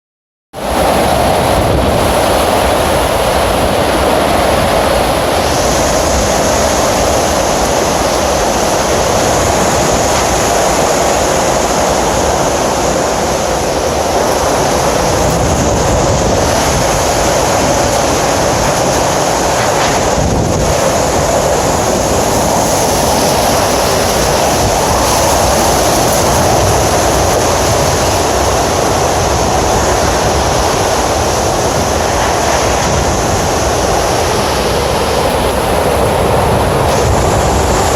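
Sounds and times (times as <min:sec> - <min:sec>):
hurricane wind roaring: 0:00.5 - 0:37.9.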